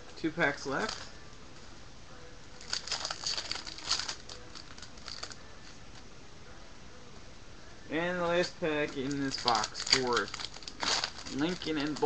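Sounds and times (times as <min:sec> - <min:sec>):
card pack wrapper tearing and crinkling: 0:02.6 - 0:05.4, 0:09.0 - 0:12.0.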